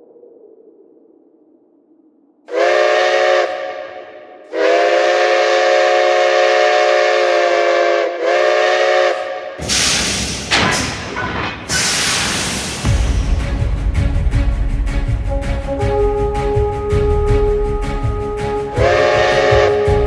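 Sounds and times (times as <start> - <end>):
loud rushing noise: 9.6 - 16.6
chord whistle blasts: 15.7 - 20.0.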